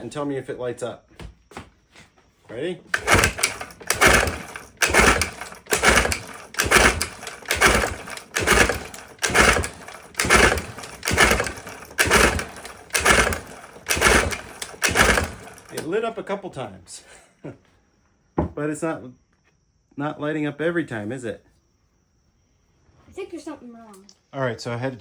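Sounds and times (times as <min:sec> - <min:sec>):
outboard engine turned over by hand: 0:02.9 - 0:15.9.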